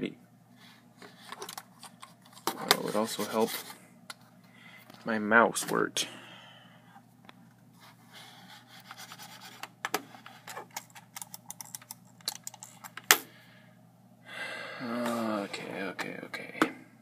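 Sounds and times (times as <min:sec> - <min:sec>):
cable and plug rattling: 0:09.6 - 0:13.1.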